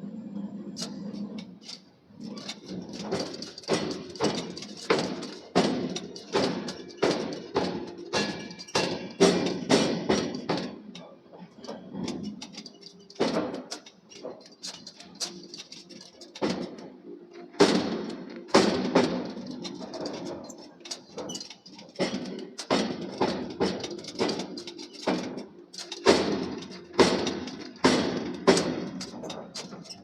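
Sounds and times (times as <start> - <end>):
forging hammer striking steel: 2.6 - 11.0, 17.6 - 30.0.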